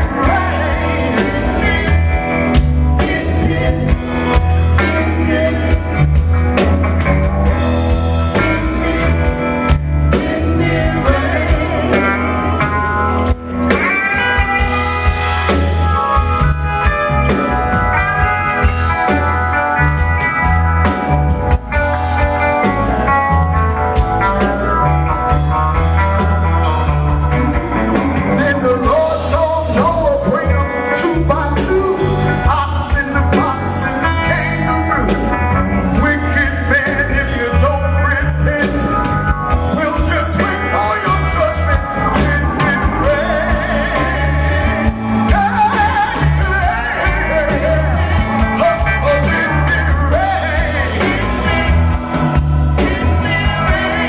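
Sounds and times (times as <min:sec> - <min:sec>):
person singing: 0:00.0 - 0:06.3, 0:08.1 - 0:16.5, 0:28.2 - 0:54.0
blues band playing: 0:00.0 - 0:54.0
heavy pulsing bass: 0:00.0 - 0:54.0.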